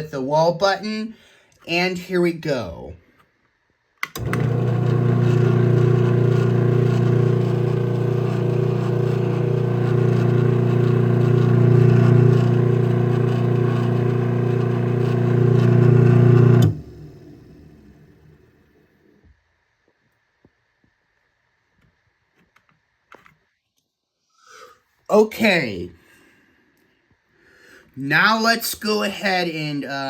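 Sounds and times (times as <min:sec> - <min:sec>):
garage door opener click: 0:04.0 - 0:18.4
garage door opener motor humming: 0:04.1 - 0:18.6.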